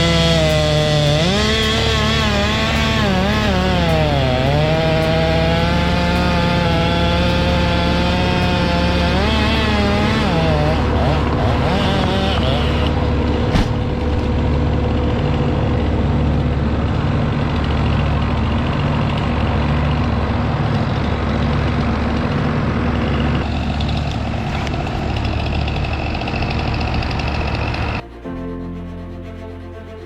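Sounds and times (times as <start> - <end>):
heavy engine running: 0.0 - 30.0
sharp knock: 13.5 - 14.0.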